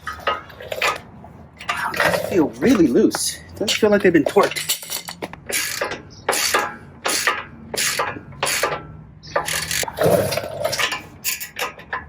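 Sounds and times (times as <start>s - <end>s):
ratchet wrench raspy strokes: 5.5s - 8.8s, 9.4s - 9.9s.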